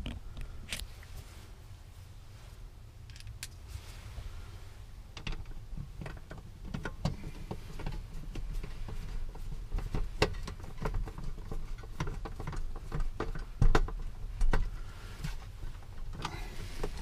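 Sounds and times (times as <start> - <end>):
steady low hum: 0.0 - 17.0
clicks and taps of parts handled: 3.1 - 3.6.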